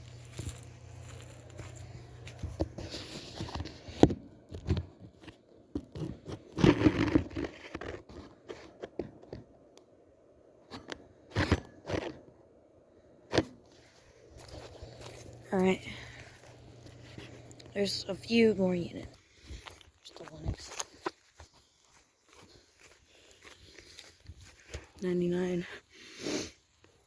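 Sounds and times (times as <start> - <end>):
low steady hum: 0.0 - 7.2, 9.0 - 21.2
crunching footsteps: 0.0 - 8.9, 13.4 - 25.8.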